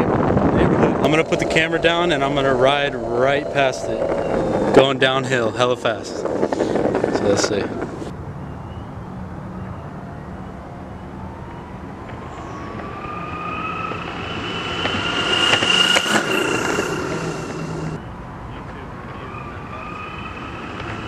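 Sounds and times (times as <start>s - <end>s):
wheels rumbling on pavement: 0.0s - 8.3s, 11.4s - 21.0s
electric longboard motor whine: 1.0s - 5.4s, 12.1s - 18.0s, 19.7s - 21.0s.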